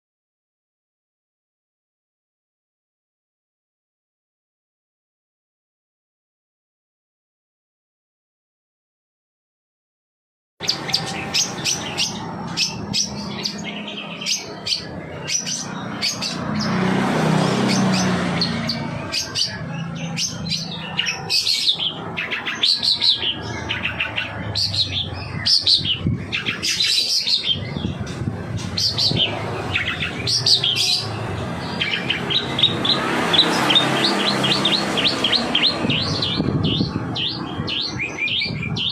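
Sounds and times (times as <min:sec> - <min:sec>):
shrike singing: 0:10.6 - 0:38.9.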